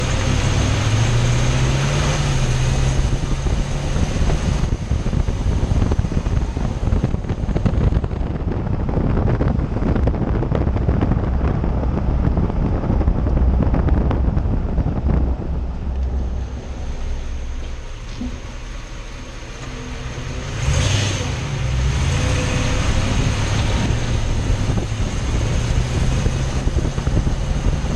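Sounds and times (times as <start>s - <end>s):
low engine hum: 0.0s - 27.9s
wind noise on microphone: 0.0s - 27.9s.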